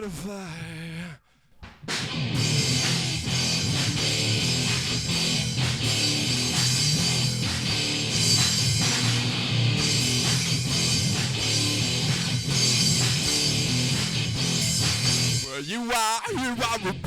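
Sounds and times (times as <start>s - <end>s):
drum-kit beat: 1.6s - 17.0s
electric guitar: 2.0s - 15.5s.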